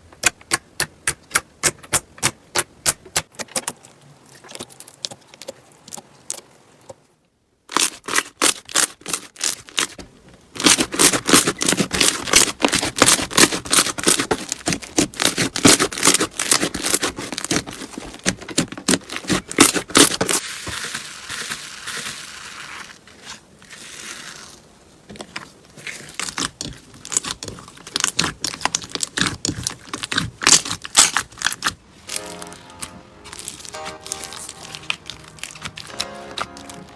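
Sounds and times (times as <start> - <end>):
slime crackling and popping: 10.6 - 24.6, 26.1 - 36.9.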